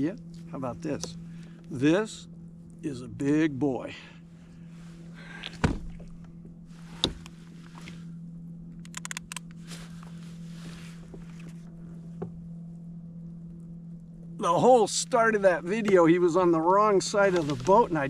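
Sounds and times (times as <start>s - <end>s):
steady low hum: 0.0s - 18.0s
knocks against a small boat: 5.5s - 6.1s.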